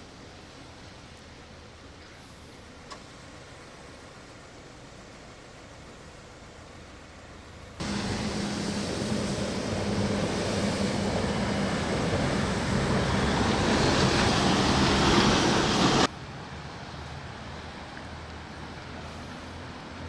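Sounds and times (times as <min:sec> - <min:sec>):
floodwater rushing through culvert: 0:03.2 - 0:20.0
low hum: 0:07.8 - 0:16.1.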